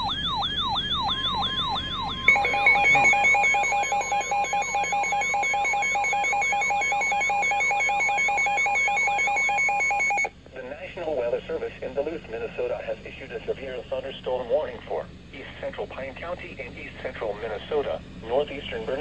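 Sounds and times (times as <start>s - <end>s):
falling siren sweep: 0.0s - 10.3s
steady high tone: 0.0s - 10.3s
warbling two-pitch alarm: 0.0s - 10.3s.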